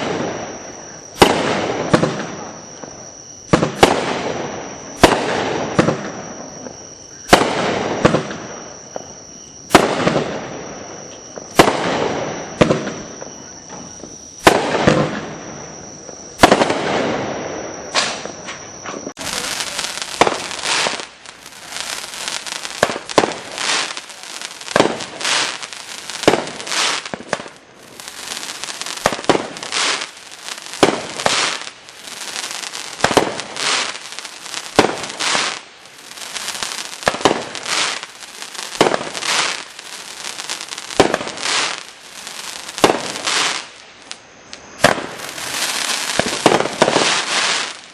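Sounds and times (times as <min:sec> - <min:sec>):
fireworks firing shots: 0:00.0 - 0:47.9
steady hissing: 0:19.1 - 0:47.9.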